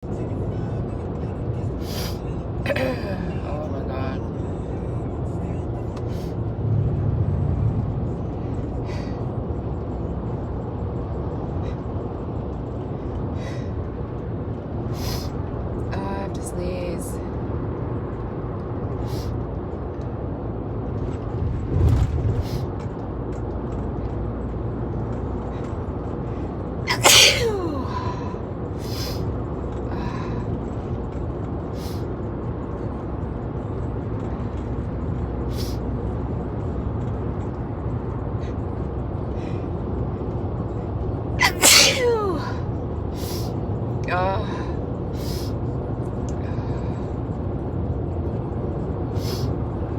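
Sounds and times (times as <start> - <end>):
car cabin rumble: 20.9 - 23.8
person sneezing: 26.9 - 28.1, 41.4 - 42.6.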